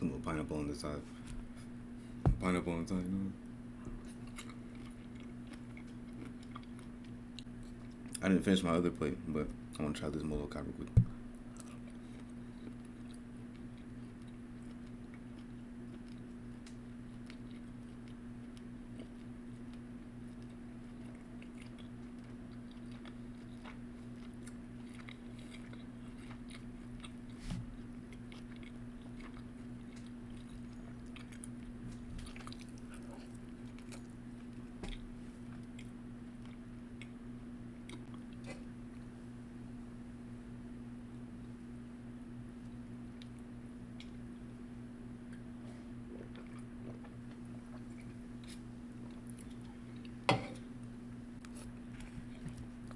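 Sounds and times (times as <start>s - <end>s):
steady low hum: 0.0s - 52.9s
person chewing food: 3.9s - 8.2s, 11.4s - 37.2s, 37.8s - 38.5s, 45.2s - 52.9s.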